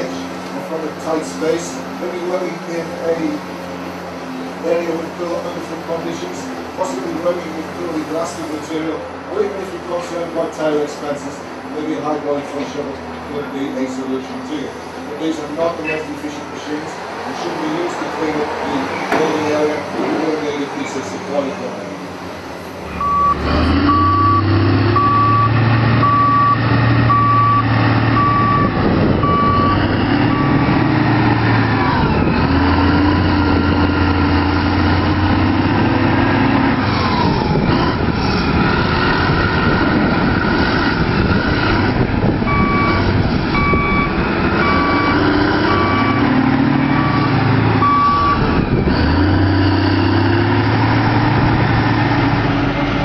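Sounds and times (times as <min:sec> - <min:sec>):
diesel construction machinery: 0:00.0 - 0:53.0
reversing alarm beeping: 0:22.9 - 0:30.7, 0:42.5 - 0:48.5.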